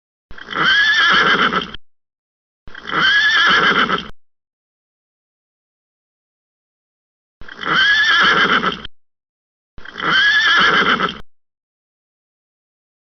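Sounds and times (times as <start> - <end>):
horse whinnying: 0.3 - 1.8, 2.7 - 4.2, 7.4 - 8.9, 9.8 - 11.3.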